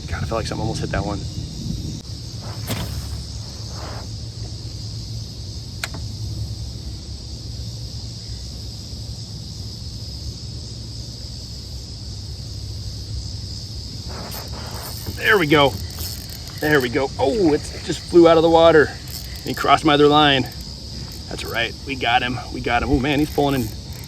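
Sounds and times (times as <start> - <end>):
wind rumbling on microphone: 0.0 - 4.2
insects droning: 0.0 - 24.0
sharp click: 2.4 - 4.1.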